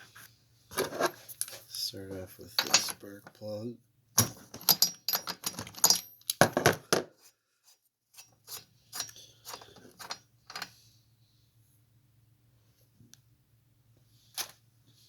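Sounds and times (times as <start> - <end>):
metal tools clinking: 2.5 - 3.1, 4.4 - 6.4.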